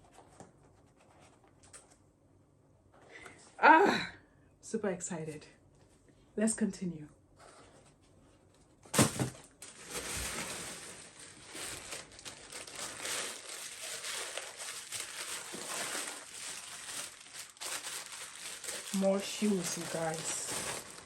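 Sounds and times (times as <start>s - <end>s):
plastic packaging crinkling: 8.9s - 21.0s.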